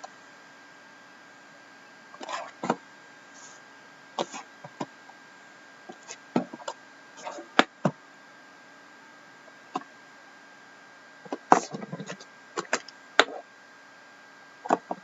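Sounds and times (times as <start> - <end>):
knocks and clicks of cardboard boxes: 14.7 - 15.0.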